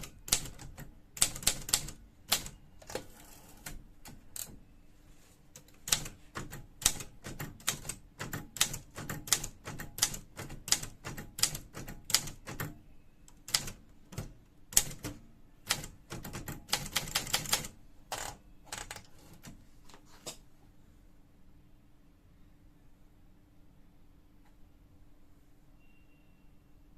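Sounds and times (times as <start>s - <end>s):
manual typewriter keystrokes: 0.0s - 4.6s, 5.6s - 19.6s.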